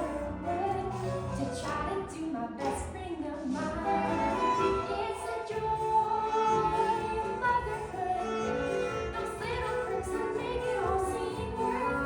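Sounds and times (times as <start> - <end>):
girl singing: 0.0 - 12.0
instrumental accompaniment: 3.6 - 12.0.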